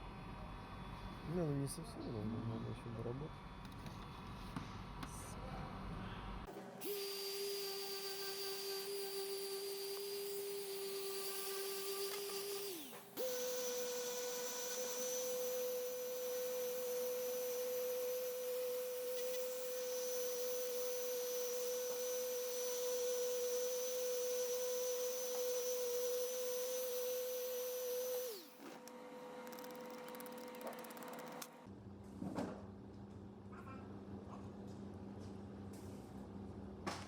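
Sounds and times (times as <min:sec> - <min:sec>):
electric rotary tool whining: 0:06.8 - 0:31.6.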